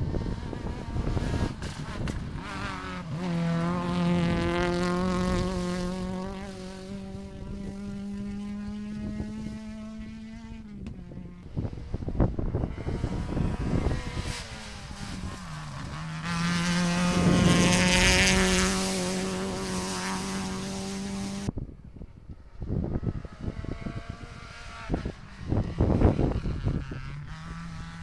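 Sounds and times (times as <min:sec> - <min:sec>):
rally car passing at speed: 0:00.0 - 0:21.5, 0:22.5 - 0:28.0
faint uneven engine sound: 0:00.0 - 0:28.0.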